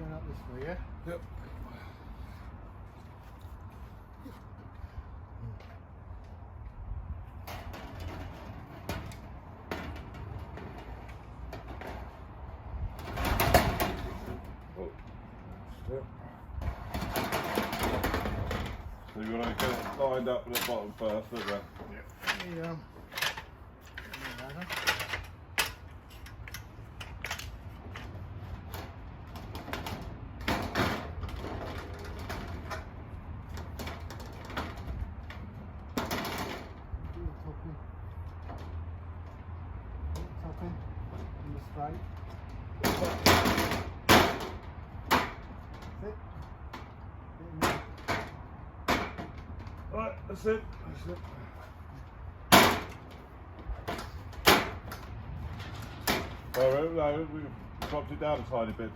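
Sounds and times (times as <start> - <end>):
gazebo roof panel clicks and knocks: 7.4 - 14.7, 16.6 - 37.0, 42.2 - 49.9, 52.4 - 57.0.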